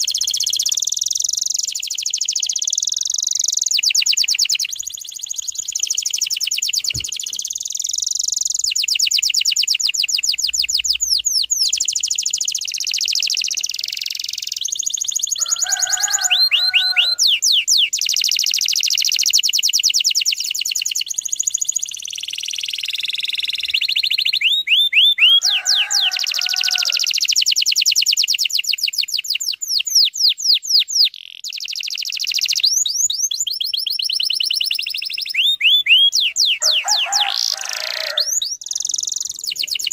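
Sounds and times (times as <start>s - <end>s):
canary singing trills: 0.0s - 39.9s
short low bird calls: 34.4s - 39.9s.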